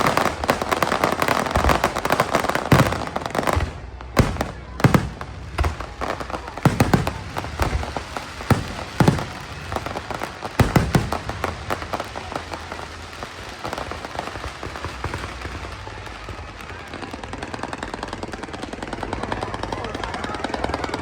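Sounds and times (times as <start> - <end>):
firework booms: 0.0 - 15.9
fireworks crackling: 0.0 - 21.0.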